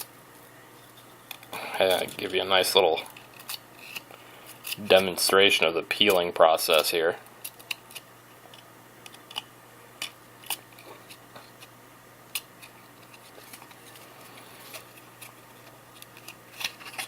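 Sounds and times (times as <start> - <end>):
cards rustling: 0.8 - 9.4, 12.3 - 17.0.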